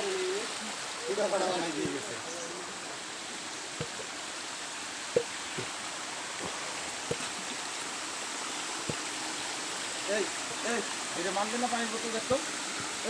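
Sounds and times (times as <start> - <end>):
stream water rushing: 0.0 - 13.0
short knocks: 3.8 - 4.1.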